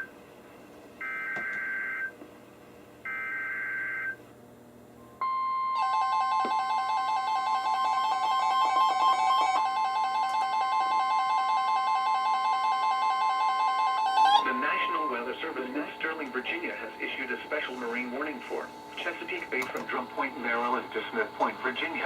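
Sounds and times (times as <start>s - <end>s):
steady warning alarm tone: 1.0s - 2.2s, 3.1s - 4.2s, 5.2s - 22.0s
weather radio alert beeping: 14.1s - 22.0s.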